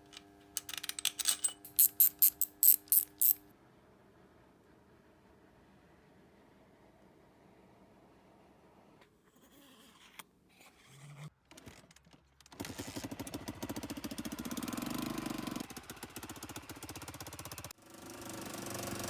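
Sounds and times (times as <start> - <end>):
motorcycle engine starting and running: 12.9 - 19.0.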